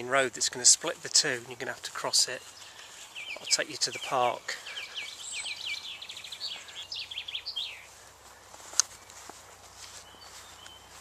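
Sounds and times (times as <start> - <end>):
songbird chirping: 0.0 - 11.0.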